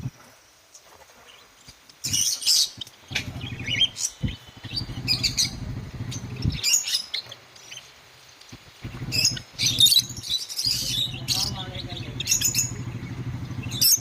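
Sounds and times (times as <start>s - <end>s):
finches chirping: 1.3s - 14.0s
low hum: 2.8s - 6.8s, 8.5s - 14.0s.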